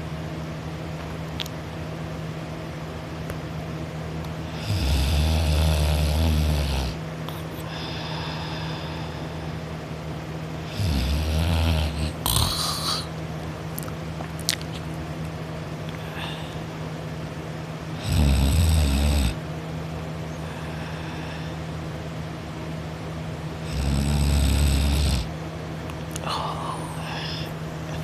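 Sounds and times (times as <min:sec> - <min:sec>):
steady low hum: 0:00.0 - 0:28.0
person snoring: 0:04.4 - 0:09.5, 0:10.6 - 0:13.1, 0:16.0 - 0:16.7, 0:18.0 - 0:19.4, 0:20.4 - 0:21.6, 0:23.6 - 0:25.3, 0:26.2 - 0:28.0.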